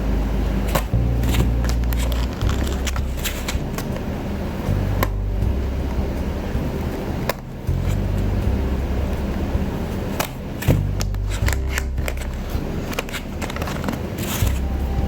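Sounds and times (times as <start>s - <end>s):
steady low hum: 0.0s - 15.0s
scrapes rustles and clicks: 10.2s - 14.7s.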